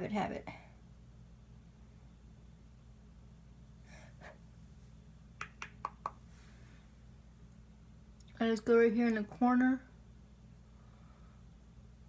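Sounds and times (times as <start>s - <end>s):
soft breath: 6.2s - 7.0s, 10.6s - 11.7s.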